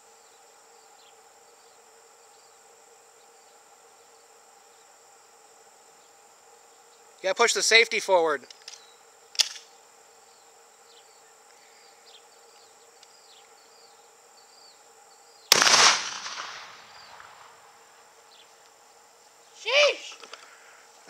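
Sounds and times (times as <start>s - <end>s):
insect drone with chirps: 0.0s - 21.0s
shotgun shot echoing: 15.5s - 17.6s.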